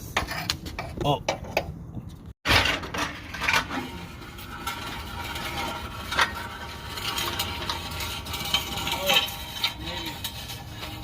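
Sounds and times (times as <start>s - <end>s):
metal tools clinking and scraping: 2.5s - 11.0s.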